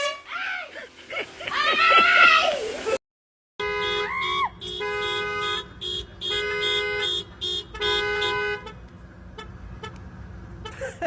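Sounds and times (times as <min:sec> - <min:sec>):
horn toots: 0:00.0 - 0:00.5, 0:03.6 - 0:10.8.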